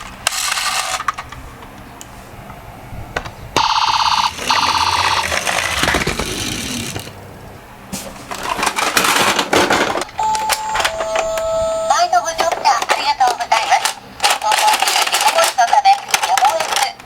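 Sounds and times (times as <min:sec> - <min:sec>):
toy cars rolling: 0:00.0 - 0:01.4, 0:03.6 - 0:07.2, 0:08.3 - 0:17.0
buzzy electronic bell tone: 0:10.2 - 0:12.0.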